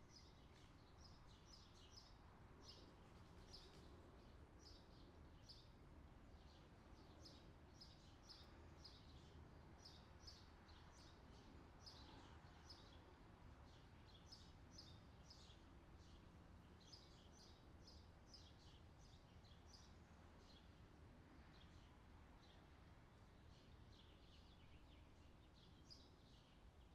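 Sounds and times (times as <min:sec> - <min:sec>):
small birds chirping: 0:06.4 - 0:26.9.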